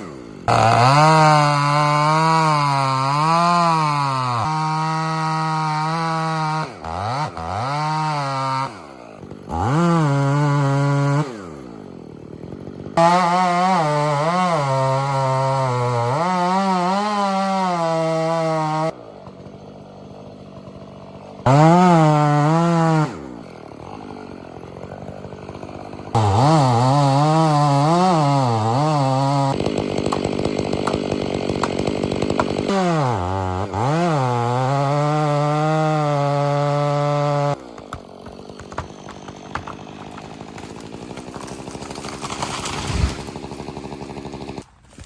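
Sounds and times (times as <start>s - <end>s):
chainsaw cutting wood: 0.0s - 45.0s.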